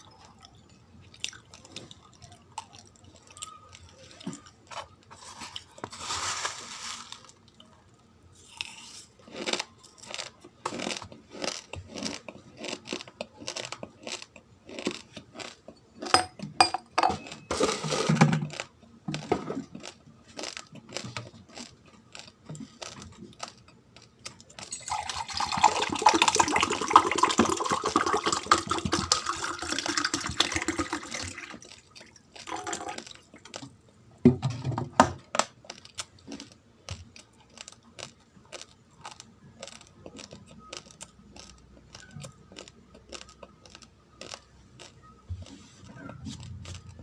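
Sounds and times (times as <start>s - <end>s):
dry grains rattling: 5.2s - 7.4s
raw rice crunching: 5.2s - 7.4s.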